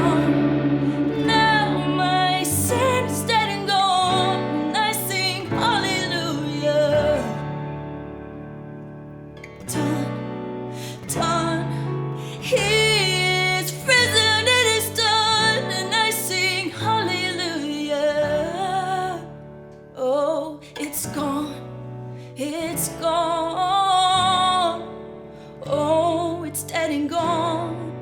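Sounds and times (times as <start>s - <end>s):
guitar accompaniment: 0.0s - 28.0s.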